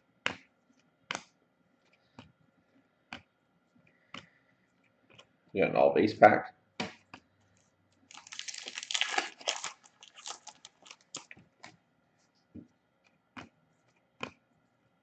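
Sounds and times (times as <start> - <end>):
foil wrapper tearing and crinkling: 8.1 - 11.4
cards ticking and rustling: 8.1 - 11.8.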